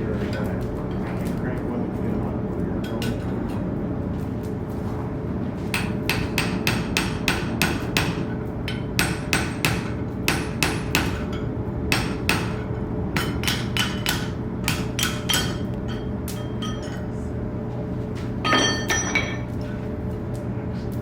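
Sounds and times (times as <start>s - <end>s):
hammer striking iron on anvil: 5.7s - 17.1s, 18.4s - 19.5s.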